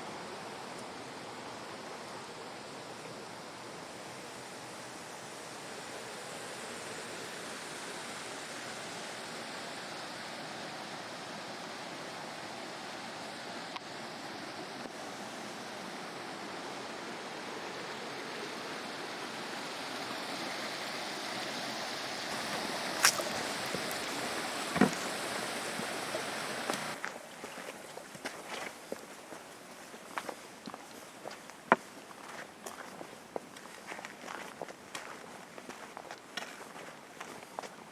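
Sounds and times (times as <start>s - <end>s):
water rushing over rock: 19.3s - 33.8s.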